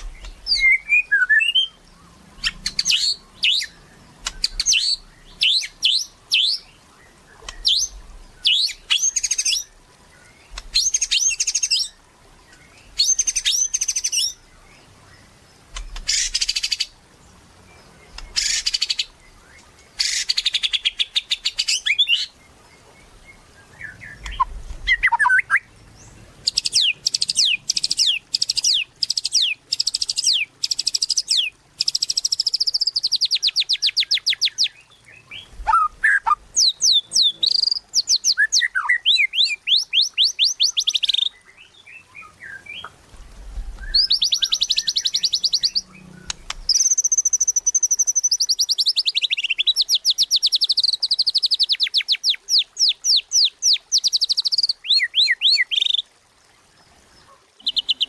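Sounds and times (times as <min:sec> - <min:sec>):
shama singing whistles and trills: 0:00.0 - 0:09.8, 0:23.6 - 0:25.7, 0:26.5 - 0:43.0, 0:43.8 - 0:56.0.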